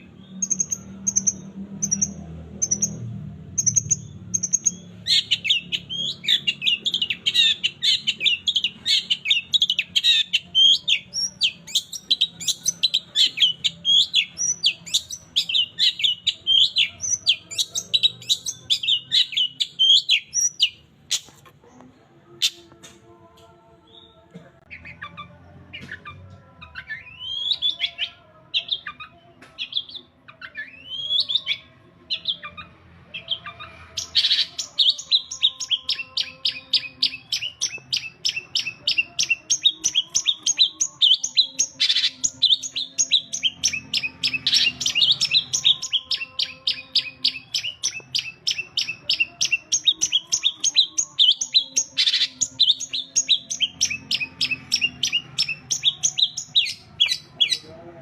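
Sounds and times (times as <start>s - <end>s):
bird sharp repeated chirps: 0.0s - 3.0s, 3.6s - 21.3s.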